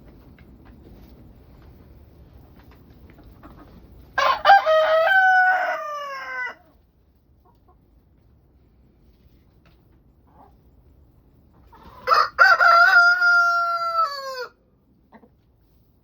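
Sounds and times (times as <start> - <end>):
rooster crowing: 4.2 - 6.6, 12.0 - 14.6.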